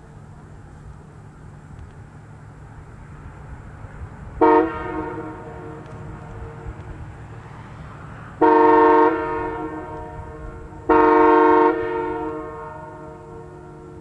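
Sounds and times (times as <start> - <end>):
train air horn blasts: 4.4 - 6.8, 8.4 - 14.0.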